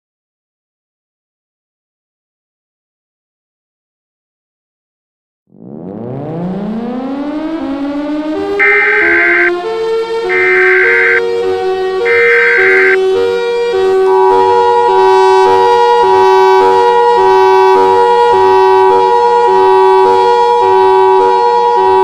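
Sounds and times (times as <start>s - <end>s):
rasping digital data screech: 8.6s - 9.5s, 10.3s - 11.2s, 12.1s - 13.0s
two-tone alert attention signal: 8.6s - 9.5s, 10.3s - 11.2s, 12.1s - 13.0s
tone alternating low and high: 8.6s - 9.6s, 10.3s - 11.2s, 12.1s - 13.0s.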